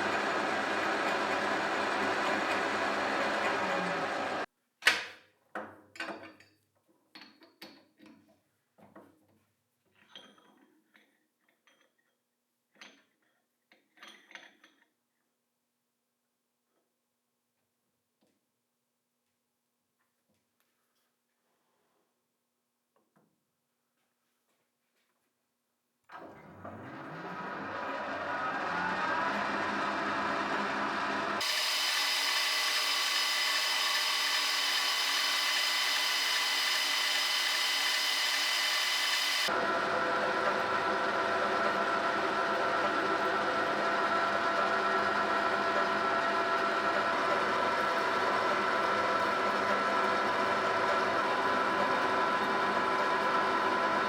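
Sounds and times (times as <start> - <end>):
lathe cutting noise: 0.0 - 4.5, 26.8 - 54.0
metal lathe whining: 0.0 - 4.5, 26.2 - 54.0.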